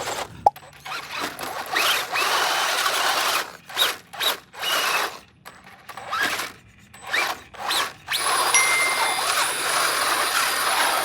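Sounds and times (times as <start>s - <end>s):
electric toy car motor whining: 0.9s - 5.3s, 5.9s - 8.5s, 9.3s - 11.0s.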